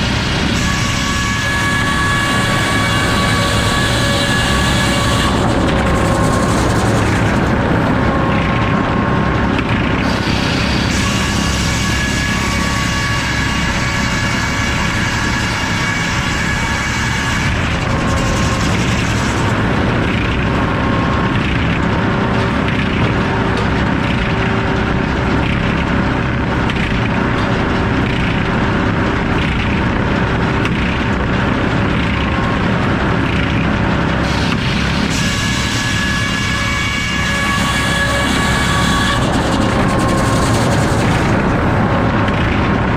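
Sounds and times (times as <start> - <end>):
circular saw running and sawing: 0.0 - 42.9.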